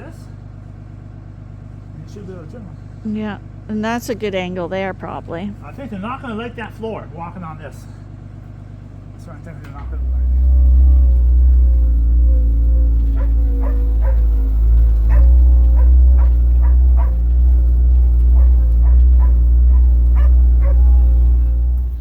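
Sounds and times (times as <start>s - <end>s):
low engine drone: 0.0s - 22.0s
dog yipping: 12.9s - 21.6s.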